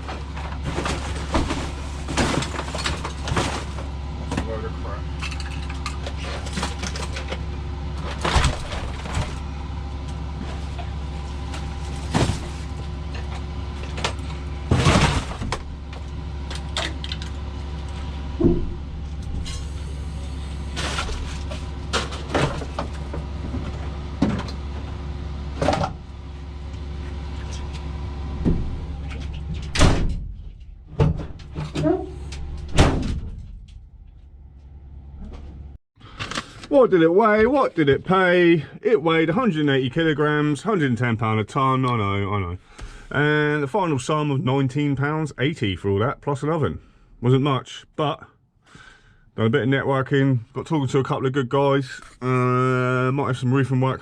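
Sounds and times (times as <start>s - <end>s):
engine hum: 0.0s - 47.6s
clanks and knocks: 18.4s - 19.5s, 20.8s - 24.9s, 28.4s - 35.6s.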